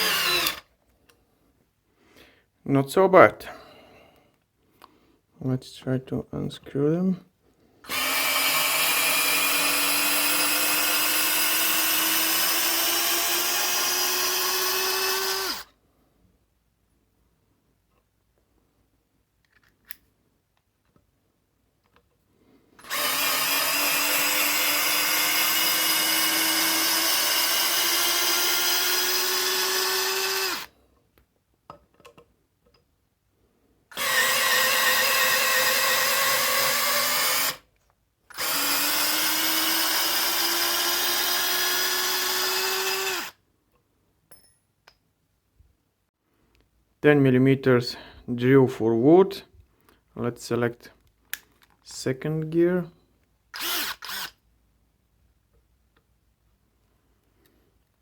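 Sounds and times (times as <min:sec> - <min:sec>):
cordless drill motor running: 0:00.0 - 0:00.6, 0:07.8 - 0:15.7, 0:22.8 - 0:30.7, 0:33.9 - 0:37.6, 0:38.3 - 0:43.4, 0:53.5 - 0:54.4.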